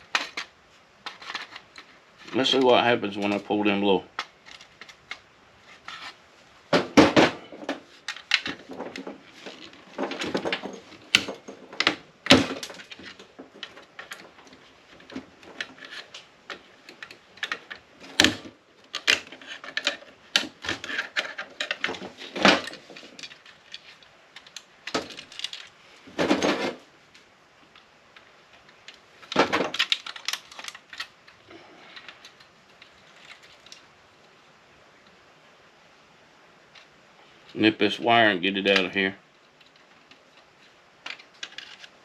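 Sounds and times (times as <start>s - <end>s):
small metal parts clinking: 8.0s - 14.4s, 15.0s - 26.7s.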